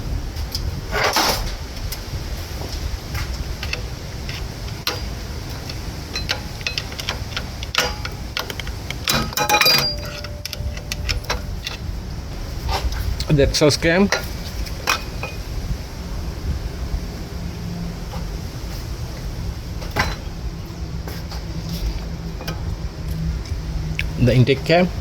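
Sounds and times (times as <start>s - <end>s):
steady low rumble: 0.0s - 25.0s
metallic clinks of tools: 6.1s - 11.8s.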